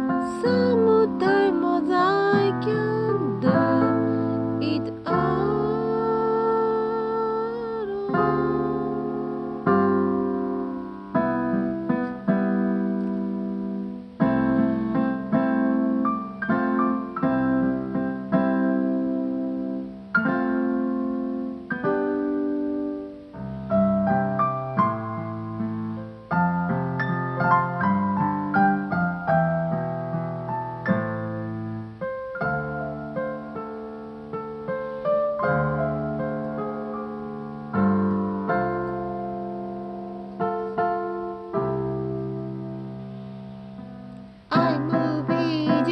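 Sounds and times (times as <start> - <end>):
slow piano playing: 0.0 - 45.9.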